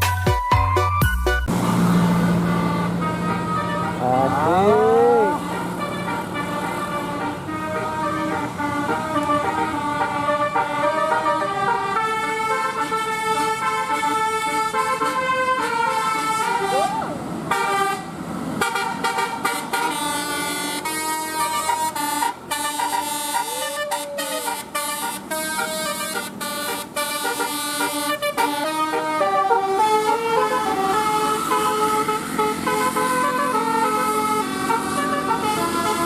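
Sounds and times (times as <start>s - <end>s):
multi-tone bus horn playing tune: 0.0s - 36.0s.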